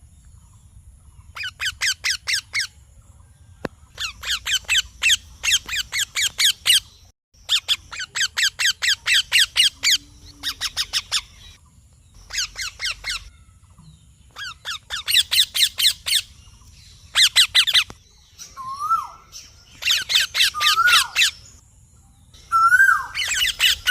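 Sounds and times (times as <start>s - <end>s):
parrot chirping: 1.4s - 2.7s, 4.0s - 11.6s, 12.2s - 13.4s, 14.4s - 16.4s, 17.1s - 17.9s, 19.8s - 21.6s, 22.5s - 23.9s.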